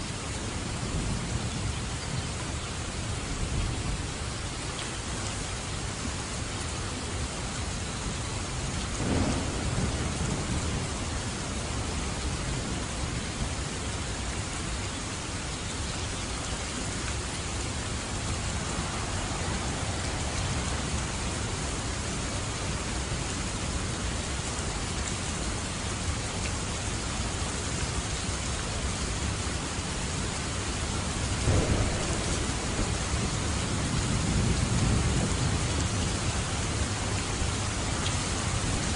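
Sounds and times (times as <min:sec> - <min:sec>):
steady rain falling: 0:00.0 - 0:38.9
thunder rumbles: 0:08.9 - 0:13.6, 0:31.1 - 0:38.9.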